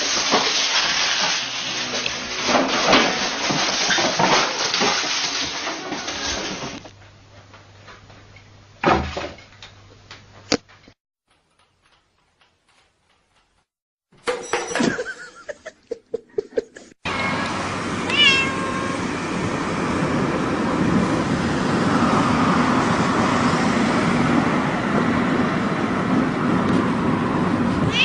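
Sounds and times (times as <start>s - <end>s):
cat meowing: 17.1s - 19.1s.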